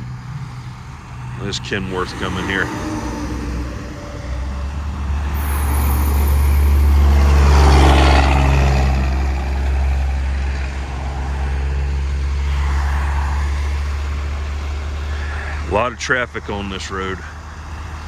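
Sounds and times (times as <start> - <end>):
low engine drone: 0.0 - 18.0
truck passing by: 0.0 - 18.0.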